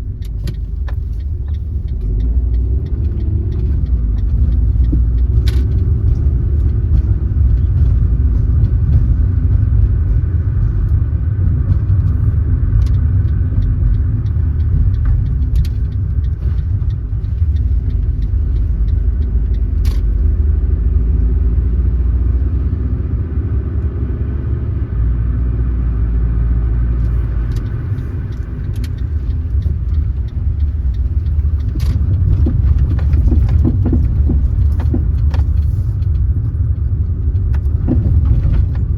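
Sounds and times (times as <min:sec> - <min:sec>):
car road and engine rumble: 0:00.0 - 0:38.9
faint clicks: 0:27.0 - 0:38.9.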